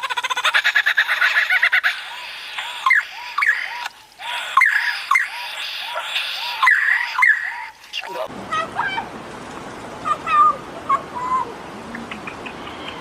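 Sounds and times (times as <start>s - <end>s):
bird whistled calls: 4.5s - 7.6s.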